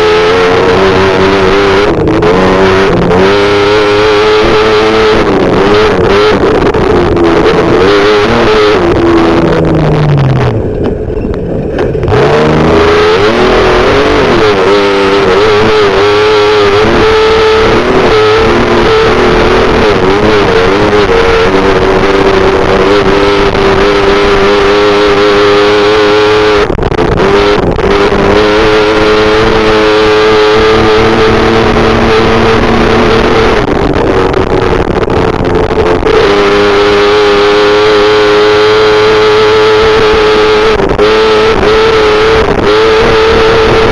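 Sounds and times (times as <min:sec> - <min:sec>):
truck engine running hard: 0:00.0 - 0:43.9.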